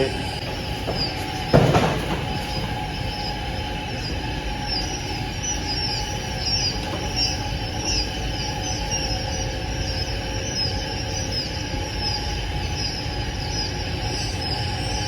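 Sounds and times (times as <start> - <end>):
chicks peeping: 0.0 - 15.0
mechanical hum: 0.0 - 15.0
thump: 0.9 - 2.7.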